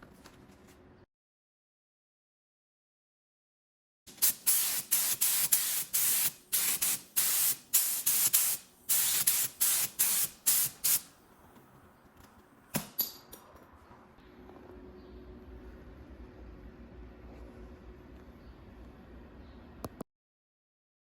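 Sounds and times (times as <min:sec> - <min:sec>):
spray hissing bursts: 0:04.2 - 0:11.1.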